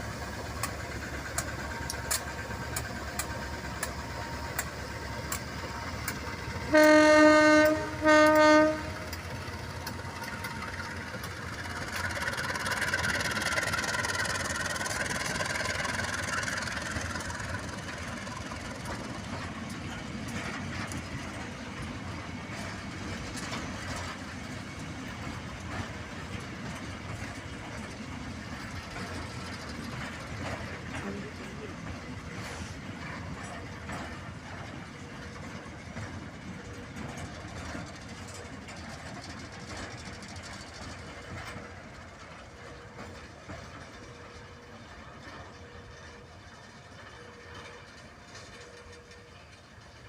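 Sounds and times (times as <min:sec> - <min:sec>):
train running on track: 0:00.0 - 0:50.0
train horn blasts: 0:06.6 - 0:09.2.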